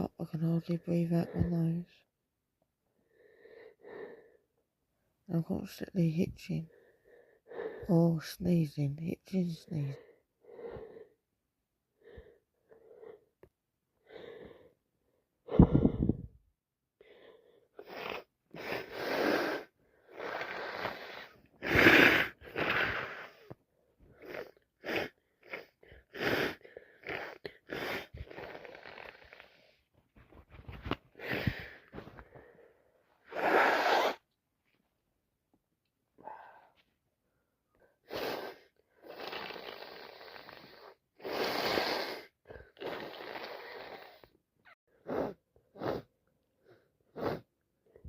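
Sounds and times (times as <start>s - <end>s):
person sneezing: 33.3s - 34.2s.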